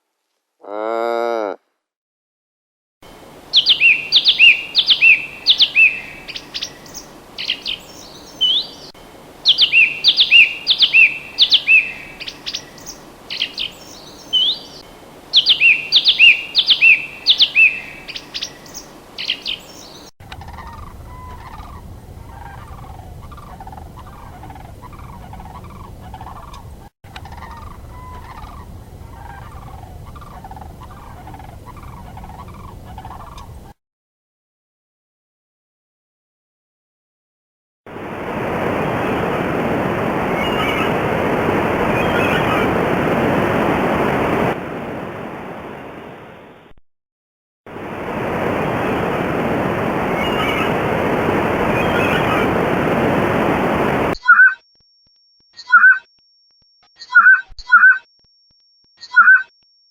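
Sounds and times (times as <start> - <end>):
animal giving low repeated calls: 0.6 - 1.6
songbird whistling and chirping: 3.5 - 22.8, 40.4 - 40.9, 42.0 - 42.7, 50.1 - 50.8, 51.7 - 52.4, 54.2 - 54.6, 55.6 - 56.1, 57.0 - 58.1, 59.0 - 59.5
low rumble: 20.4 - 26.2, 27.3 - 33.0.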